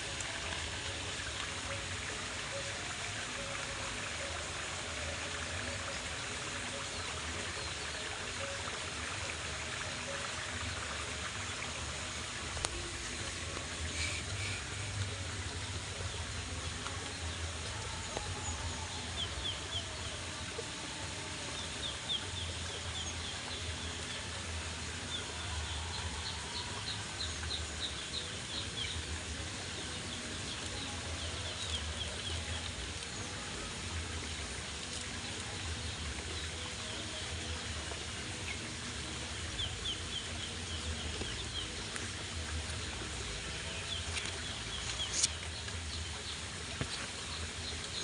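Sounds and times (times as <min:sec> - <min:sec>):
rain hissing: 0:11.7 - 0:15.7.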